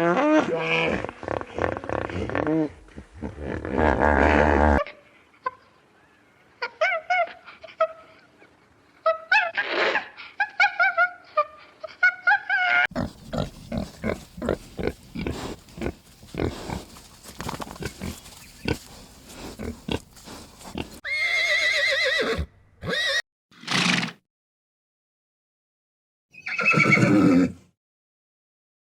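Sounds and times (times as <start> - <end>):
rough animal grunts: 12.9 - 21.0.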